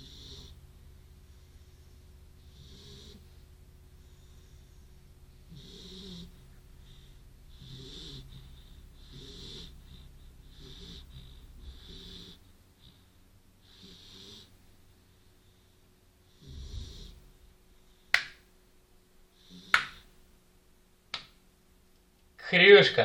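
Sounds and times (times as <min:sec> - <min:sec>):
dog snoring: 0:00.0 - 0:00.6, 0:01.2 - 0:14.6, 0:16.2 - 0:18.0, 0:19.3 - 0:20.0.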